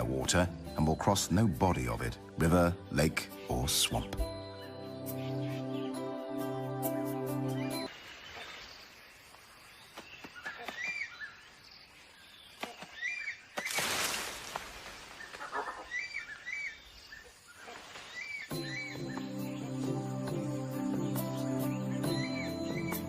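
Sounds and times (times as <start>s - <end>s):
bird calling in paired notes: 0.0s - 7.9s, 15.2s - 23.0s.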